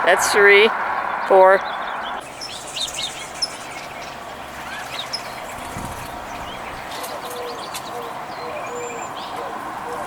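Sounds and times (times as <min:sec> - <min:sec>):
outdoor background hiss: 0:00.0 - 0:10.0
wild birds chirping: 0:00.0 - 0:10.0.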